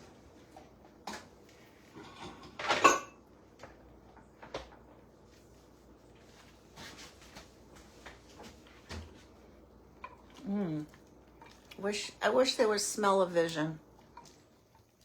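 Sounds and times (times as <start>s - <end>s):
dishes clattering: 1.9s - 3.2s.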